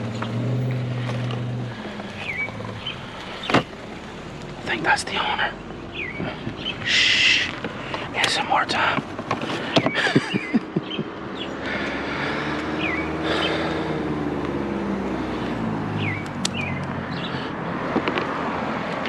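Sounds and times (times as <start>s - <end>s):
car driving past: 0.0s - 8.2s, 11.2s - 19.0s.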